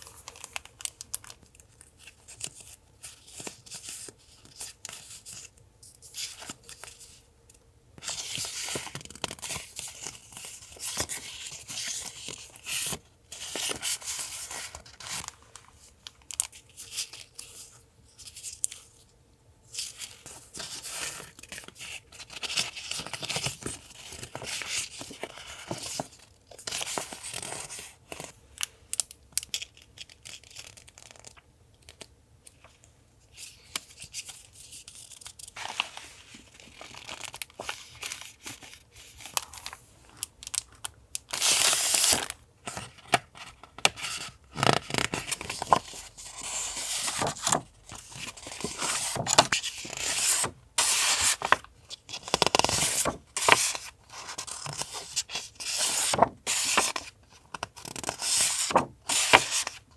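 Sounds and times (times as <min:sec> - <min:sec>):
paper rustling and crinkling: 0:00.0 - 0:07.2, 0:19.7 - 0:28.4, 0:33.4 - 0:59.9.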